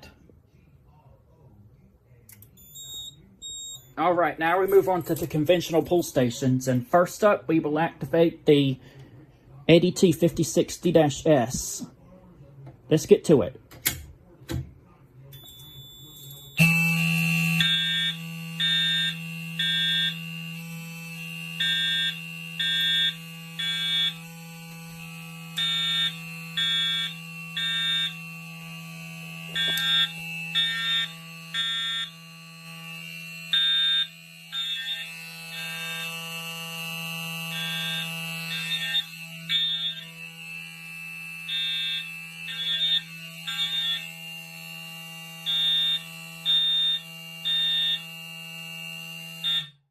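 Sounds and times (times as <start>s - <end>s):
mechanical fire alarm horn buzzing: 2.4s - 7.1s, 15.3s - 49.9s
electronic horns beeping: 15.4s - 49.9s.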